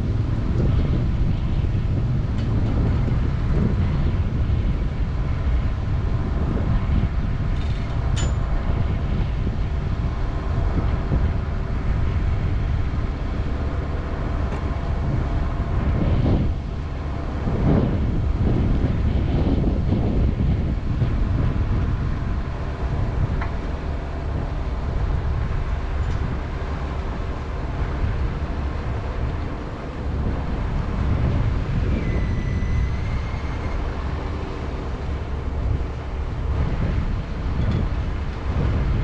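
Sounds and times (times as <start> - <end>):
wind buffeting microphone: 0.0 - 39.0
thin whistle: 32.0 - 33.8.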